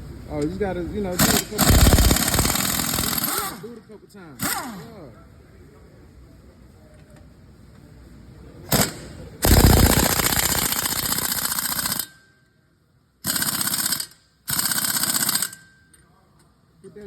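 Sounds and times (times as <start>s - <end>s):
impact wrench rattling: 1.2s - 3.6s, 8.8s - 12.2s, 13.2s - 15.7s.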